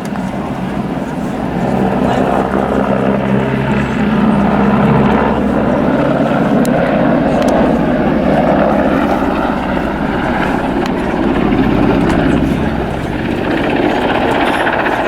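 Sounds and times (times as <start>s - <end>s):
helicopter rotor and engine: 0.0s - 15.0s.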